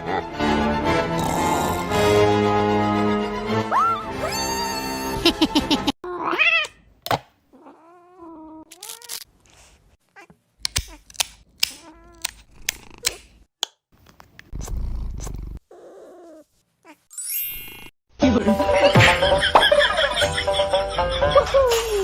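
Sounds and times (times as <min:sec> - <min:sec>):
cat meowing and yowling: 0:03.7 - 0:05.2, 0:06.1 - 0:06.8.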